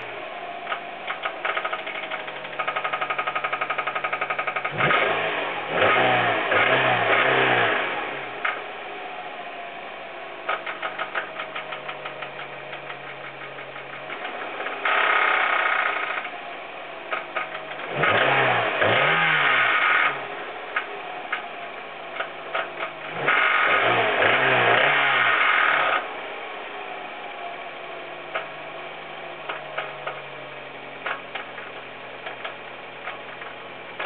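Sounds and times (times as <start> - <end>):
engine revving: 0.0 - 9.3, 10.4 - 26.8
car engine knocking: 0.6 - 4.9, 10.3 - 26.1, 29.4 - 34.0.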